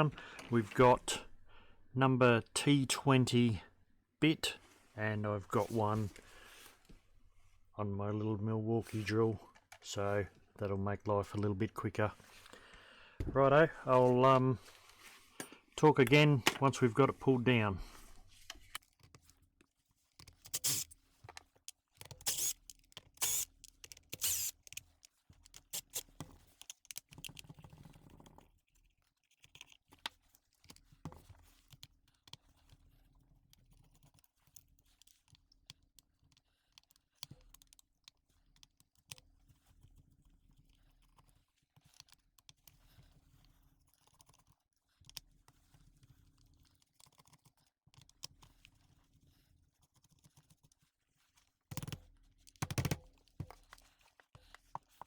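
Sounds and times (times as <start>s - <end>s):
tool and small parts clicking and knocking: 18.2s - 32.8s, 51.4s - 55.0s.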